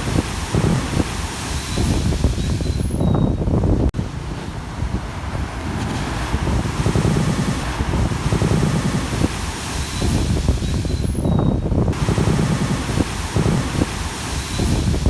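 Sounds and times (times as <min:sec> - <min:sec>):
waves rolling in: 0:00.0 - 0:15.0
wind buffeting microphone: 0:00.0 - 0:15.0.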